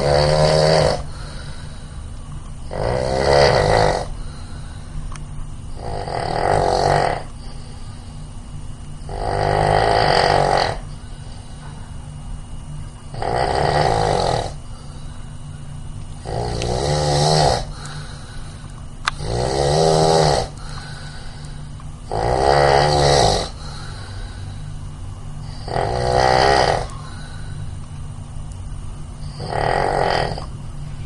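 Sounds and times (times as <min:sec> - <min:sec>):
person snoring: 0:00.0 - 0:02.0, 0:02.7 - 0:04.8, 0:05.7 - 0:07.3, 0:09.1 - 0:11.4, 0:13.1 - 0:14.6, 0:16.2 - 0:24.6, 0:25.4 - 0:27.7, 0:29.2 - 0:30.5
steady low hum: 0:00.0 - 0:31.0.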